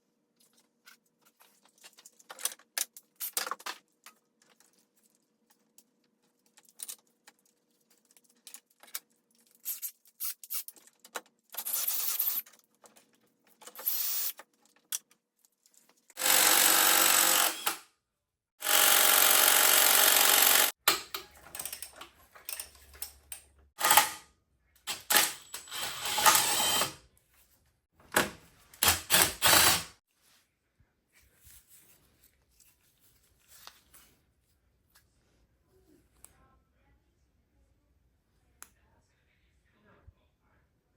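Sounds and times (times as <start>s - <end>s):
handheld power tool running: 16.2s - 17.8s, 18.6s - 20.8s, 23.8s - 24.2s, 24.9s - 27.0s, 28.8s - 30.0s.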